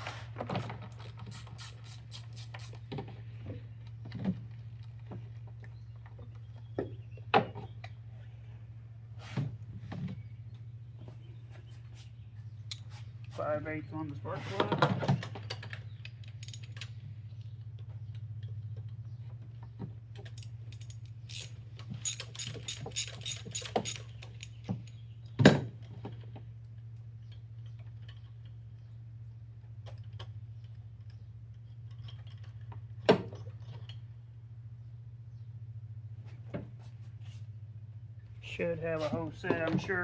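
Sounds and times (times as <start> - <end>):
ratchet clicking: 20.7 - 24.6.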